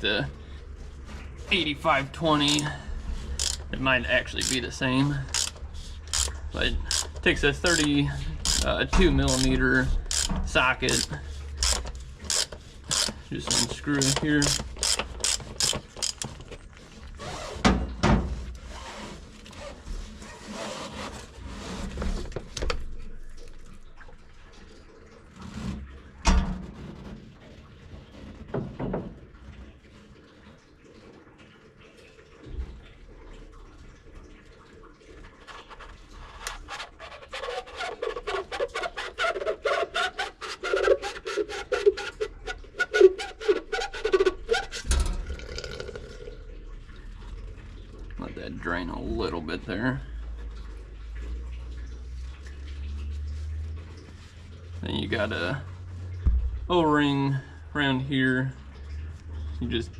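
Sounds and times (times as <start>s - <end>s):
ratchet wrench clicking: 3.4s - 3.6s, 4.4s - 4.6s, 5.3s - 6.3s, 6.9s - 8.7s, 10.1s - 10.3s, 10.9s - 16.3s
knocks and clicks: 56.2s - 57.0s.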